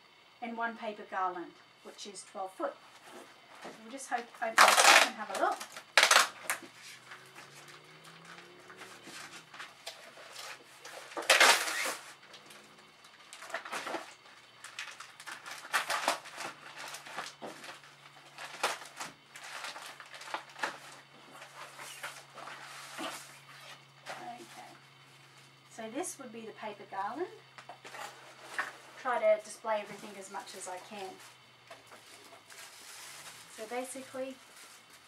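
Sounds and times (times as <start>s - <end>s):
faint steady hum: 0.0s - 35.0s
paper and cardboard rustling: 13.4s - 24.8s, 29.9s - 35.0s.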